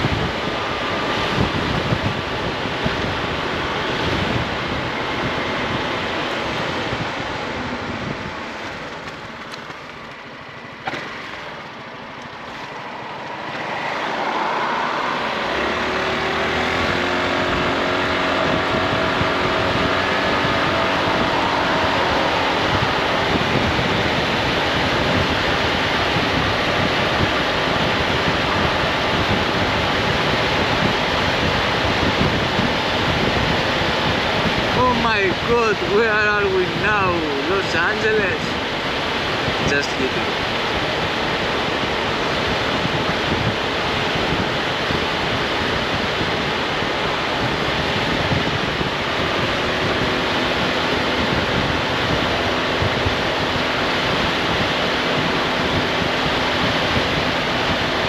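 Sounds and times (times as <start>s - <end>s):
scooter engine: 0.0s - 35.0s
wind rush on microphone: 0.0s - 58.0s.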